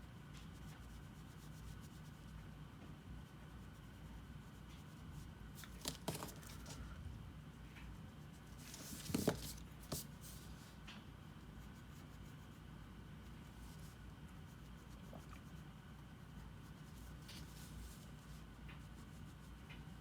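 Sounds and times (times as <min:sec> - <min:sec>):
low steady hum: 0:00.0 - 0:20.0
light knocks and rustles: 0:05.6 - 0:07.0, 0:08.6 - 0:10.5.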